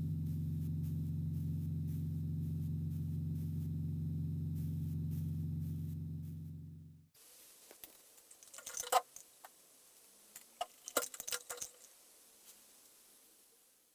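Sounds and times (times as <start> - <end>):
low hum: 0.0 - 7.1
small hard objects clicking: 7.7 - 9.6, 10.4 - 12.0.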